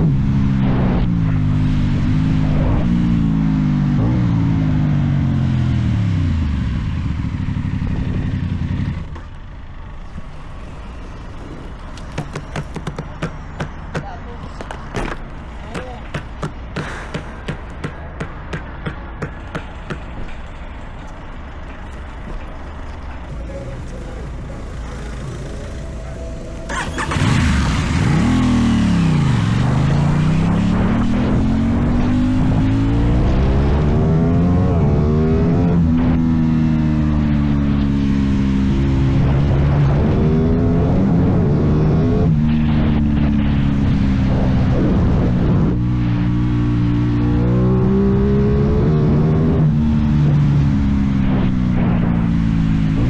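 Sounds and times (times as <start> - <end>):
motorcycle engine revs falling: 9.9 - 23.3, 26.6 - 31.7.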